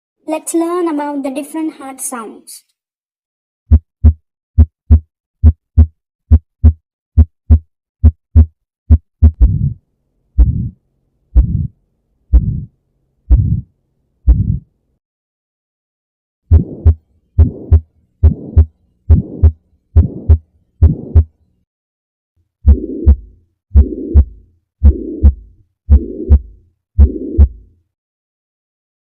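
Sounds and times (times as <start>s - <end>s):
heart murmur: 3.7s - 9.8s, 10.4s - 10.8s, 11.4s - 12.7s, 13.3s - 13.7s, 14.3s - 14.7s, 16.5s - 21.3s, 22.7s - 27.6s
heartbeat lub-dub: 3.7s - 9.8s, 10.4s - 10.8s, 11.4s - 12.7s, 13.3s - 13.7s, 14.3s - 14.7s, 16.5s - 21.3s, 22.7s - 27.7s.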